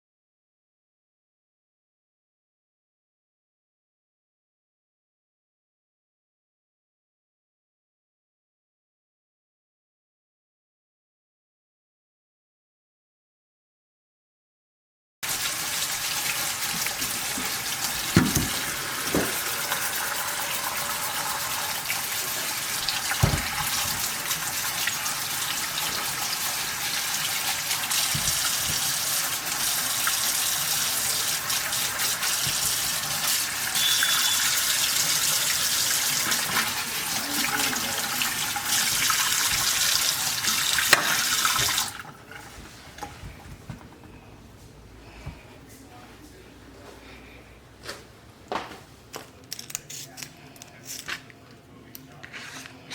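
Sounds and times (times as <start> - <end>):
tap water running into sink: 15.2 - 42.4.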